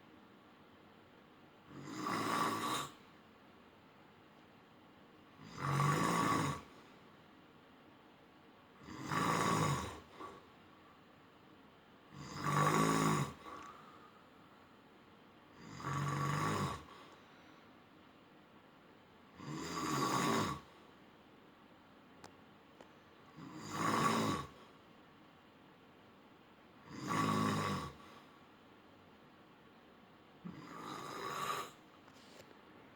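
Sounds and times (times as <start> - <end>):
man snoring: 1.7 - 3.0, 5.4 - 6.7, 8.8 - 10.4, 12.1 - 13.7, 15.6 - 17.0, 19.4 - 20.7, 23.4 - 24.6, 26.8 - 28.0, 30.4 - 31.8
quiet breathing: 5.4 - 7.3, 8.8 - 11.2, 12.1 - 18.0, 22.8 - 25.0, 26.8 - 28.7, 30.4 - 32.7.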